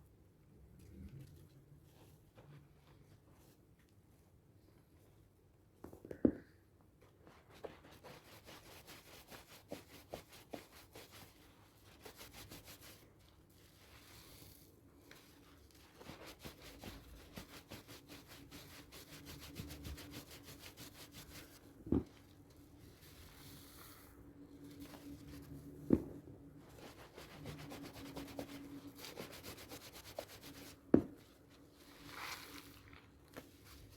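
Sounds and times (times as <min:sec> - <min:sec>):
soap rubbed with scratchy strokes: 0:07.2 - 0:25.8, 0:26.5 - 0:33.9.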